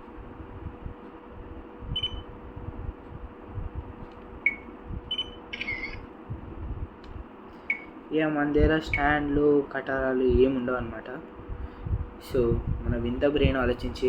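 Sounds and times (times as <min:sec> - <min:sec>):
camera electronic beeps: 0:02.0 - 0:02.2, 0:04.5 - 0:06.0, 0:07.7 - 0:07.9.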